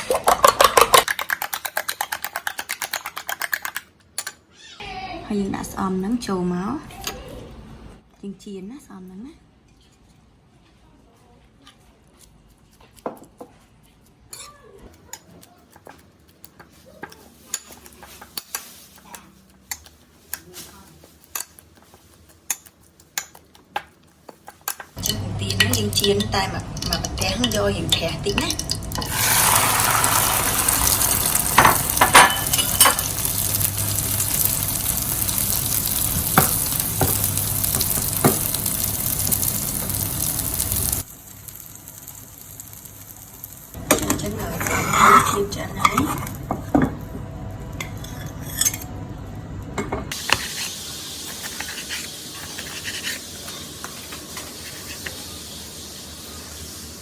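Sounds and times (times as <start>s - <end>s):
utensil clinking against pan: 25.0s - 33.5s
leaves sizzling in hot oil: 25.0s - 45.7s, 50.1s - 57.0s.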